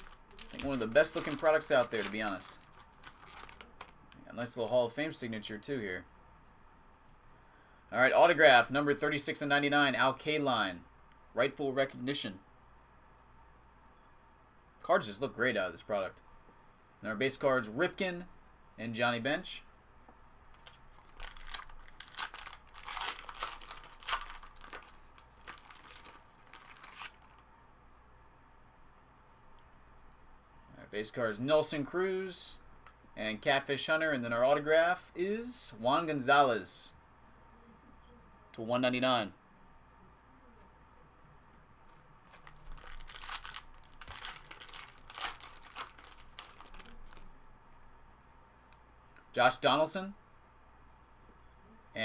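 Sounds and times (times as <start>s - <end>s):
wrapper crinkling and tearing: 0.0s - 4.2s, 20.6s - 27.4s, 42.2s - 47.3s.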